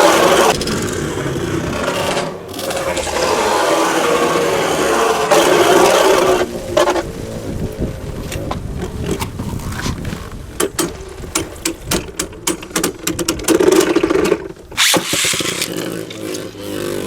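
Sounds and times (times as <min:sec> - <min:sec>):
spinning whine: 0:00.0 - 0:10.3.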